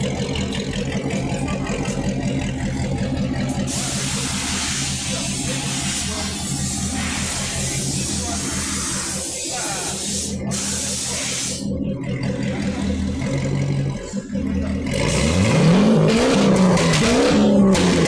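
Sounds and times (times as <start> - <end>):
car engine revving: 0.0 - 18.0.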